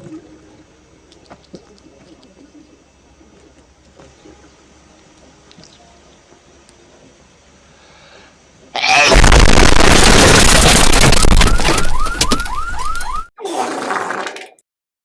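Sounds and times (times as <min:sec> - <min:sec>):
loud distorted noise blast: 0:08.8 - 0:11.8.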